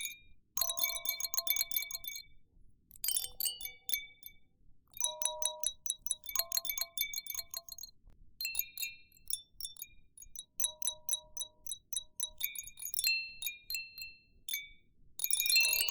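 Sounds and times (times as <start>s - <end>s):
baby chime toy jingling: 15.5s - 15.9s.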